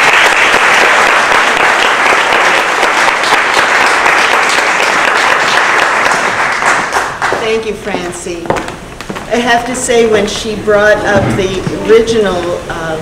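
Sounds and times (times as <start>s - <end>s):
audience applauding: 0.0s - 7.4s
woman talking: 7.4s - 8.7s, 9.3s - 13.0s.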